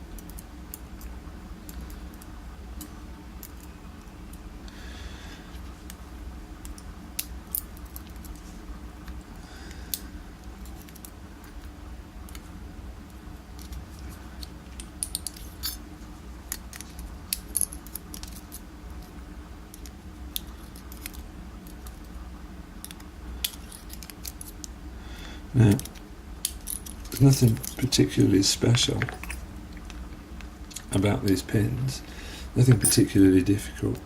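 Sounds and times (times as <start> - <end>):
steady low hum: 0.0 - 34.0
lock parts clicking: 28.7 - 30.0.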